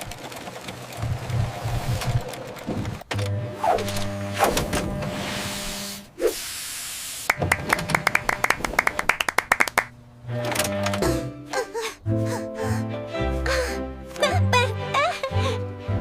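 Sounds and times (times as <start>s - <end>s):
fast run of clicks: 0.0s - 3.1s, 7.3s - 10.0s
hiss: 5.1s - 7.3s
light background music: 10.7s - 16.0s.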